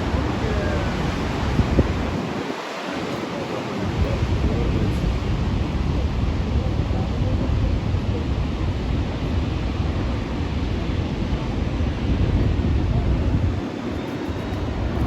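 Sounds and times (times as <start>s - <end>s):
ocean surf roaring: 0.0s - 15.0s
wind buffeting microphone: 0.0s - 15.0s.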